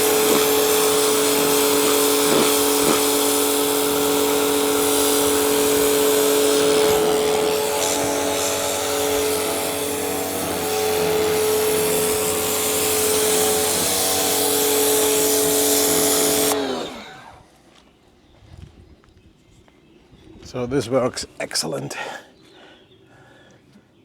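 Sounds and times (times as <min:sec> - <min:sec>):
water jet hissing: 0:00.0 - 0:16.6
pressure washer motor whine: 0:00.0 - 0:17.5.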